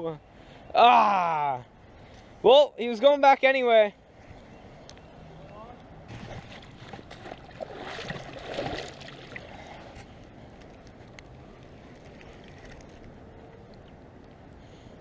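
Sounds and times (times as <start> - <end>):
stream water rushing: 6.1 - 10.0.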